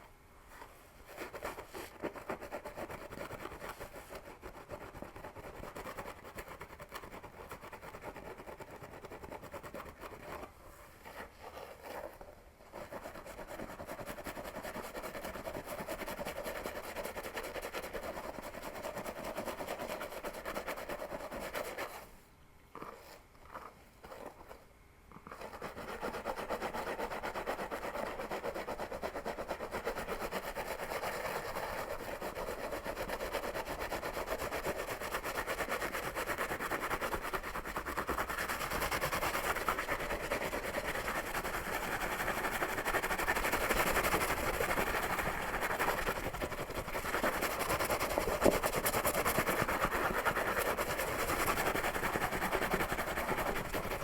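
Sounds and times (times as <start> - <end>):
fingernails scratching scalp: 25.3 - 54.0.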